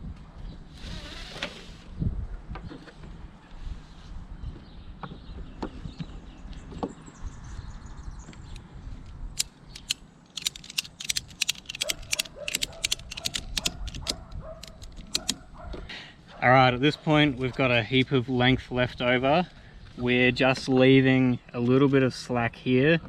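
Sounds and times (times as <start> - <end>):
ratchet strap clicking: 9.4 - 15.4.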